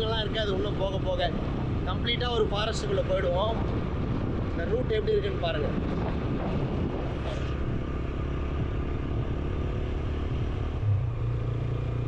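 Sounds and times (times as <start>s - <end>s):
motorcycle engine running: 5.7s - 12.0s.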